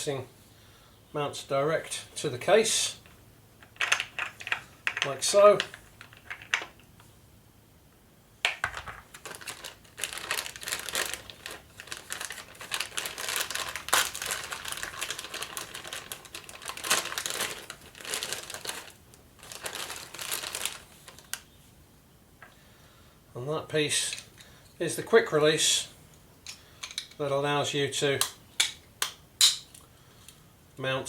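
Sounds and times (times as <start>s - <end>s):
plastic packaging crinkling: 8.5s - 21.6s.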